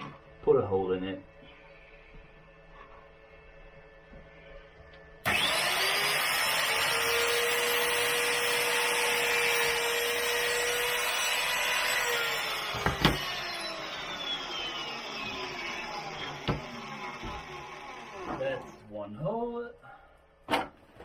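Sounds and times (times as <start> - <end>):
power drill boring wood: 5.2 - 18.8.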